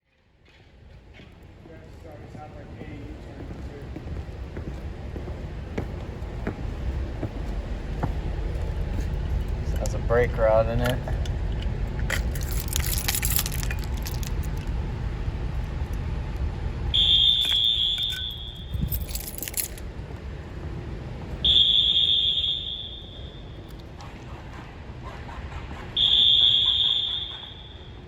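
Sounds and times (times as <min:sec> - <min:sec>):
rattling clicks: 0:10.8 - 0:14.7, 0:17.4 - 0:19.8
fire alarm horn blasts: 0:16.9 - 0:19.0, 0:21.4 - 0:23.7, 0:26.0 - 0:28.0.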